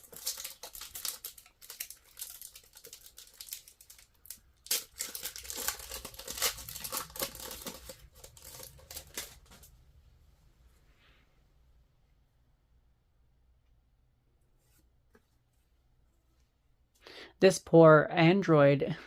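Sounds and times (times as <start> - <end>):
wrapper crinkling and tearing: 0.0 - 9.7.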